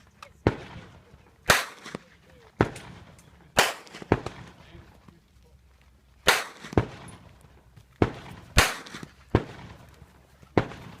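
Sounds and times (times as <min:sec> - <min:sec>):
pistol shots: 0:00.4 - 0:04.6, 0:06.2 - 0:07.3, 0:08.0 - 0:09.9, 0:10.5 - 0:11.0.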